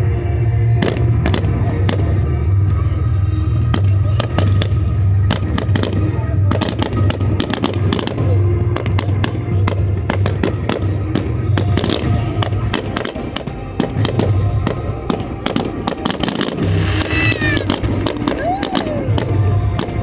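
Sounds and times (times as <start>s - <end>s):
fireworks bangs and crackles: 0.6s - 20.0s.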